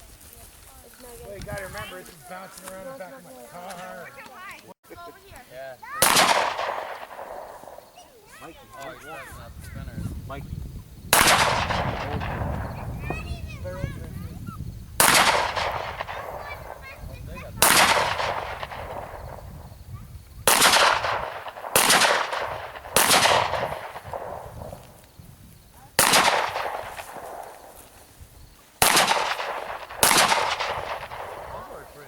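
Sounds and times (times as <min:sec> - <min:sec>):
gunshots with echo: 0:06.0 - 0:08.0, 0:11.1 - 0:13.4, 0:15.0 - 0:19.8, 0:20.4 - 0:25.0, 0:25.9 - 0:28.0, 0:28.8 - 0:32.0.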